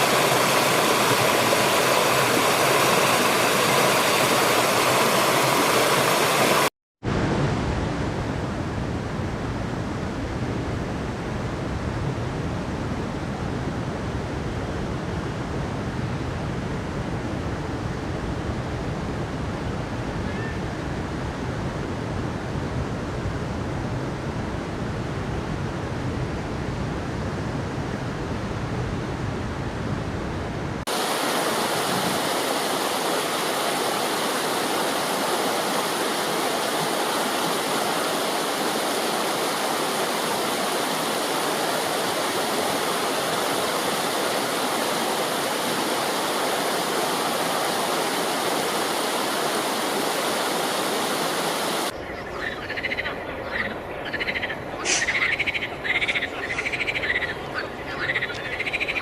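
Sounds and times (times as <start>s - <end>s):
stream running water: 0.0s - 6.7s, 30.8s - 59.0s.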